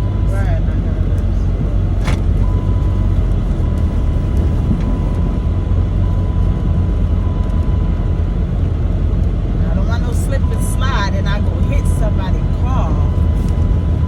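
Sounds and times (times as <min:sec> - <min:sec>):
road and engine rumble in car: 0:00.0 - 0:14.0
thin steady whine: 0:02.4 - 0:09.0.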